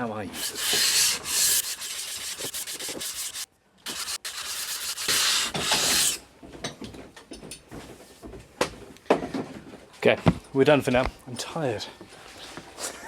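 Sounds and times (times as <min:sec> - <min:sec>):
metal plane scraping on abrasive: 0:00.3 - 0:06.2.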